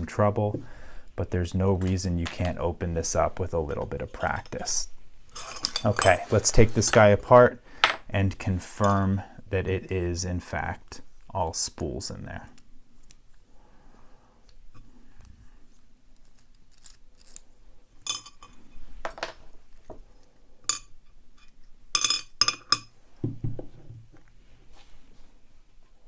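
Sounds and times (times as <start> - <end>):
metal clinking and clattering: 5.3 - 6.3, 16.5 - 19.4.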